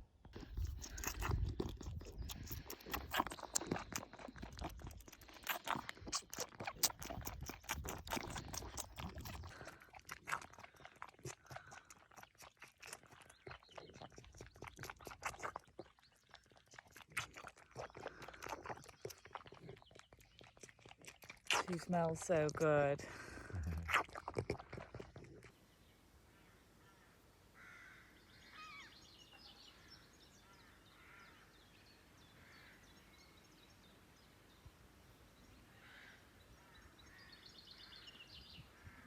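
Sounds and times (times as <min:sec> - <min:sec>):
animal tearing and chewing grass: 0:00.3 - 0:22.2, 0:23.6 - 0:25.5.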